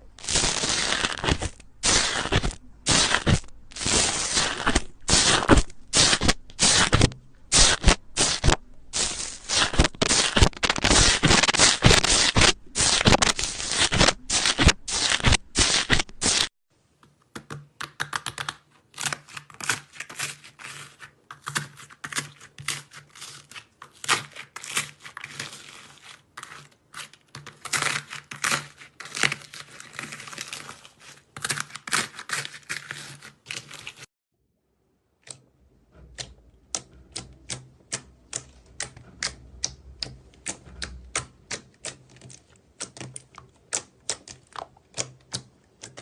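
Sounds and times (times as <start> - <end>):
slime crackling and popping: 0.2 - 16.5.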